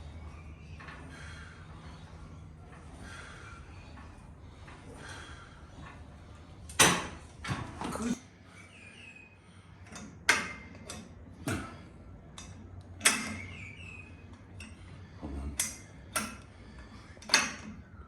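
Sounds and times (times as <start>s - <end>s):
gym equipment metallic clanks: 9.9s - 13.8s.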